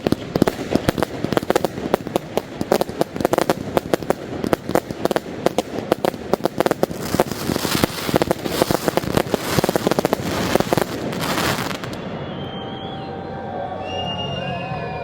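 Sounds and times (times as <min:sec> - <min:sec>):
fireworks bangs and crackling: 0:00.0 - 0:13.0.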